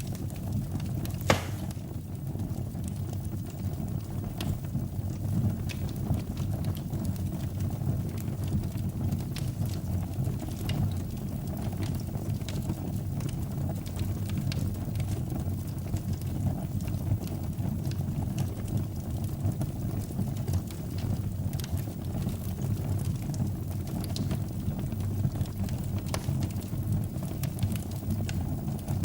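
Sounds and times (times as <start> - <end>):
fire crackles and pops: 0.0 - 29.0
low rumble of flame: 0.0 - 29.0.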